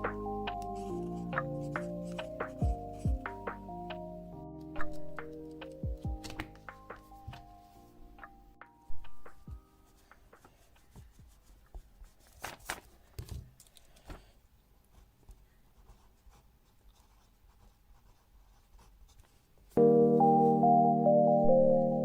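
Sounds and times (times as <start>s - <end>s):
piano music: 0.0s - 10.7s, 19.8s - 22.0s
pen writing on paper: 0.5s - 3.6s.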